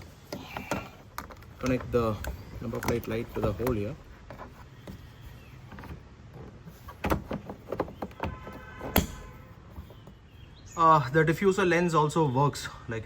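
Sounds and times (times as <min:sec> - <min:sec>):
plastic clicks and handling: 0:00.3 - 0:05.0.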